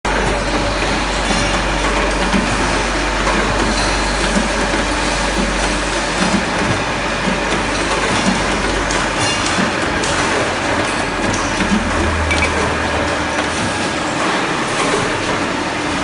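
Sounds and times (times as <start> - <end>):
pipe bending machine running: 0.0 - 16.0.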